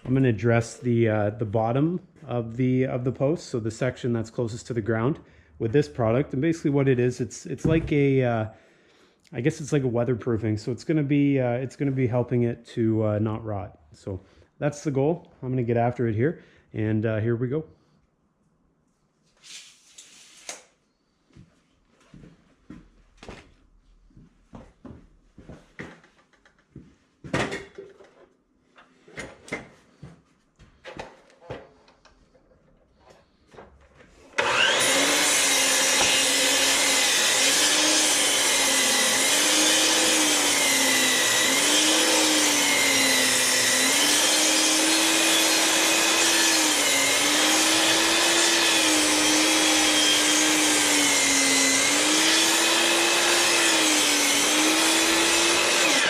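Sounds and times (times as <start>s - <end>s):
mitre saw cutting wood: 34.3s - 56.0s.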